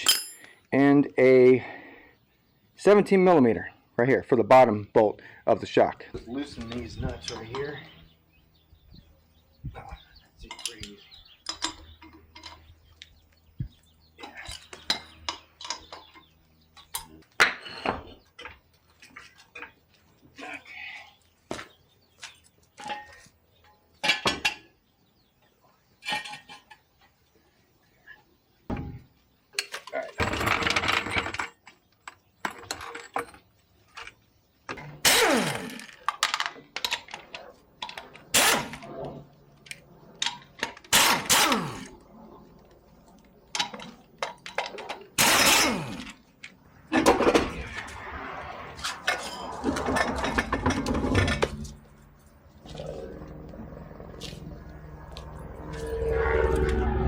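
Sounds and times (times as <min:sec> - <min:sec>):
wrenches and metal parts clanking: 0:00.0 - 0:00.6, 0:10.4 - 0:12.8, 0:14.2 - 0:19.8, 0:26.0 - 0:26.9, 0:29.6 - 0:42.0, 0:43.5 - 0:47.3, 0:48.9 - 0:52.1
metal scraping: 0:43.4 - 0:57.0.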